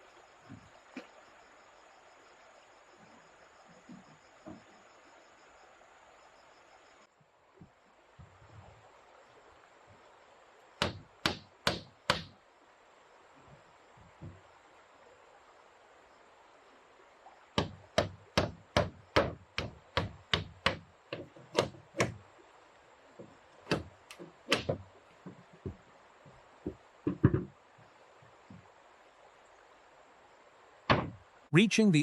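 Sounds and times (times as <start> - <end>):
wooden mallet striking wood: 10.8 - 12.3, 17.6 - 22.2, 23.7 - 24.8, 30.9 - 31.2.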